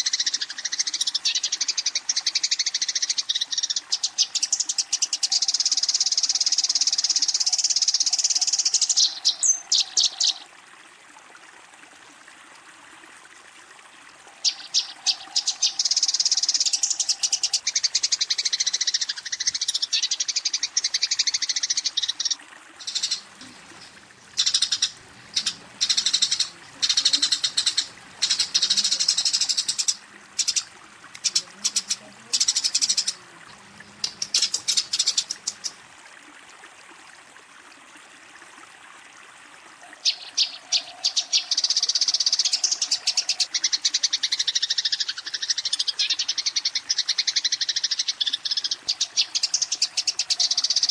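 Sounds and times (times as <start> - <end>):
sparrows chattering chirps: 22.8 - 30.6, 34.0 - 35.8.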